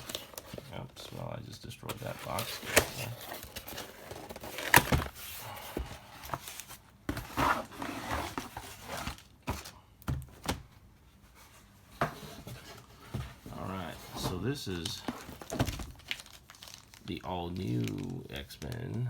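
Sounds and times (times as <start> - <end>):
packaging rustling: 0.0 - 9.8, 12.2 - 19.0
cardboard box tearing: 2.0 - 5.3.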